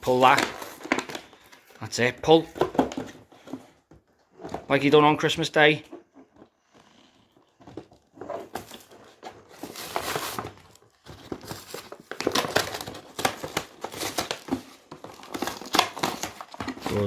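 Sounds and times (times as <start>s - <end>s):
packaging crinkling and tearing: 0.0s - 1.7s, 7.6s - 17.0s.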